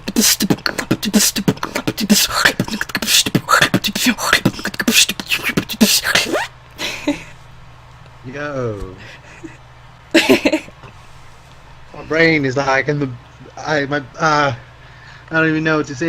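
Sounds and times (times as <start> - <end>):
person beatboxing: 0.0 - 6.5.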